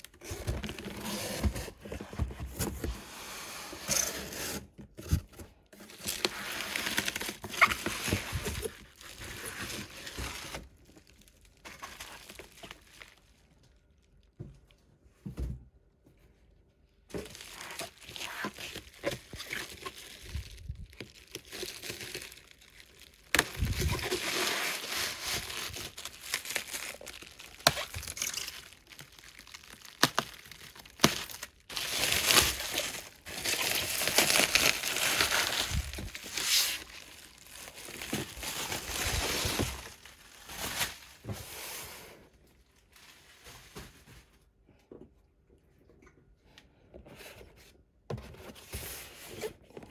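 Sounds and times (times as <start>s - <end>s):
plastic packaging crinkling: 5.9s - 14.0s, 17.1s - 41.3s.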